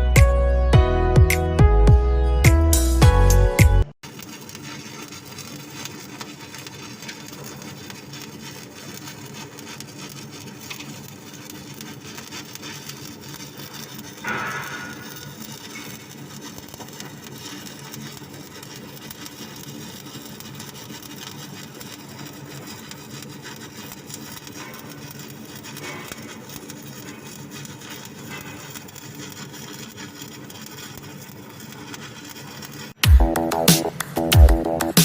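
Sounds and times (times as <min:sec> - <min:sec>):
welding arc crackling: 0:02.4 - 0:35.0.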